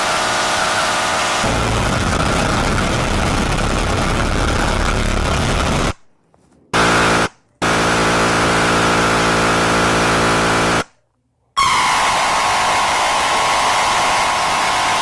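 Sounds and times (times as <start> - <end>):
loud noisy sound effects: 0.0 - 6.0, 6.8 - 10.9, 11.6 - 15.0.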